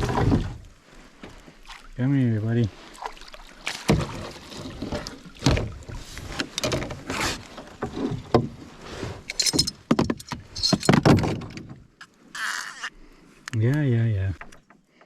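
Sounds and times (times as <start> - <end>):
knocks and rattles on a boat: 0.0 - 0.6, 3.8 - 8.7, 9.4 - 11.9
fish splashing: 2.8 - 6.1.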